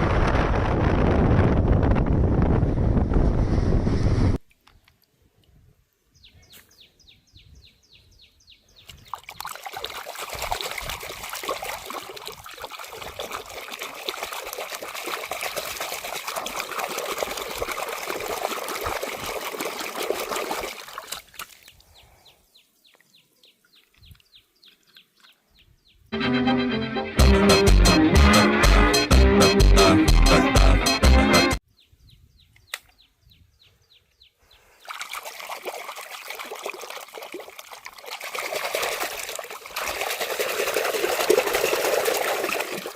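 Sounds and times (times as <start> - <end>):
running water splashing: 9.1 - 21.8, 34.8 - 42.9.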